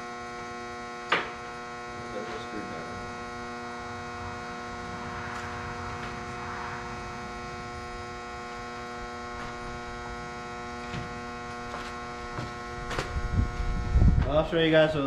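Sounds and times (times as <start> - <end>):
electrical machine hum: 0.0 - 15.0.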